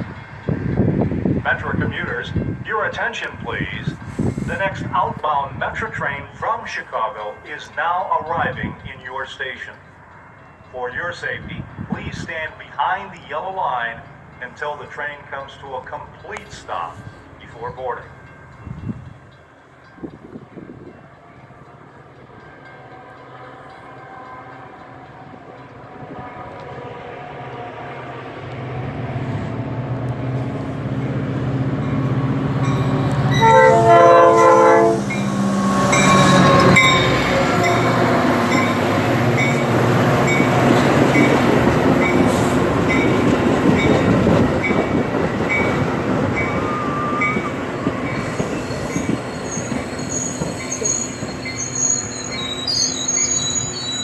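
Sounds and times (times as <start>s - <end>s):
train wheel noise: 0.0s - 8.8s, 18.1s - 54.0s
train rumble: 0.0s - 54.0s
locomotive horn chord: 31.5s - 42.7s
bell ringing: 31.8s - 41.4s.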